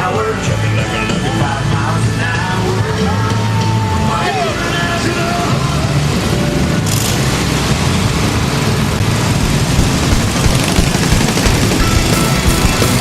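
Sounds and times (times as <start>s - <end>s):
lawn mower engine popping: 8.4s - 13.0s.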